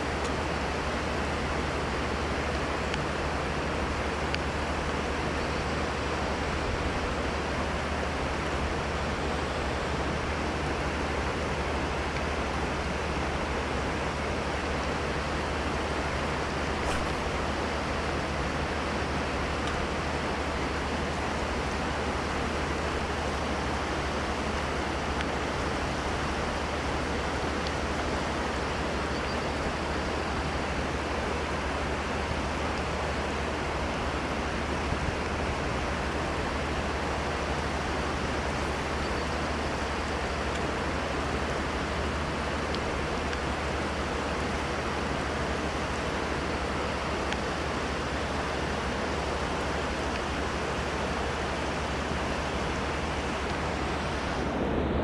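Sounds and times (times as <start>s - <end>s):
river water rushing: 13.8s - 29.0s.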